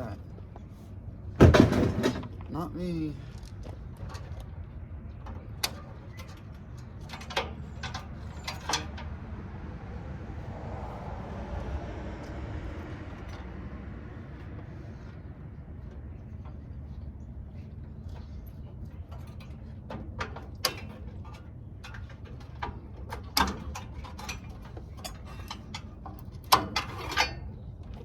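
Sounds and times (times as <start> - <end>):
steady low rumble: 9.0 - 26.6.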